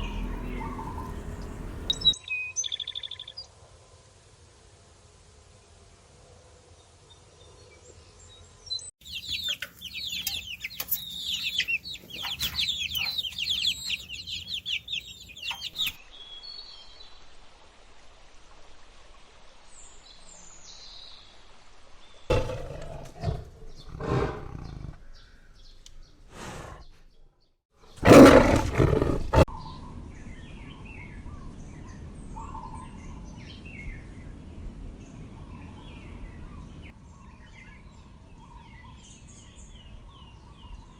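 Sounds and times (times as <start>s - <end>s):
loud roar-like animal call: 0.0s - 2.1s, 22.3s - 25.0s, 28.0s - 29.5s
flock of birds chirping: 0.0s - 3.3s, 8.1s - 16.7s, 22.3s - 27.2s, 28.0s - 34.2s.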